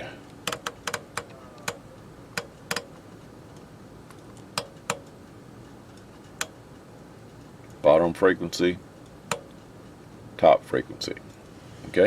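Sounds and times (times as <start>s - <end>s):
radio channel controls clicking: 0.3s - 5.2s, 9.3s - 9.6s.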